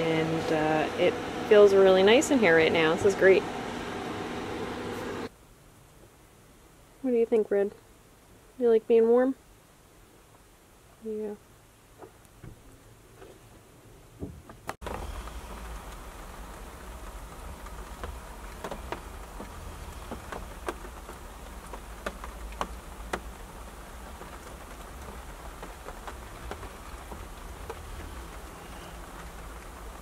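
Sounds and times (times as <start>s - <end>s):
raindrops tapping on a roof: 14.2s - 30.0s.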